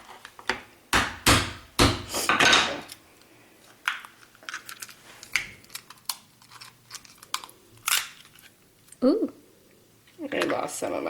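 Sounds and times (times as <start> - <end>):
lobster shell cracking: 3.8 - 9.0.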